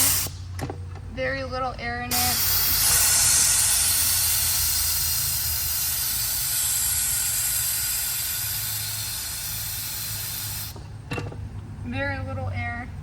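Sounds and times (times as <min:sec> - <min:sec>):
compressed air hissing from tank: 0:00.0 - 0:00.5, 0:02.1 - 0:10.9.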